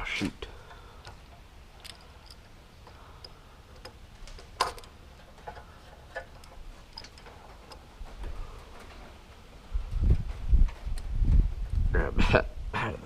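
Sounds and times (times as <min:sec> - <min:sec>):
metal parts and tools clicking: 0:00.6 - 0:09.0.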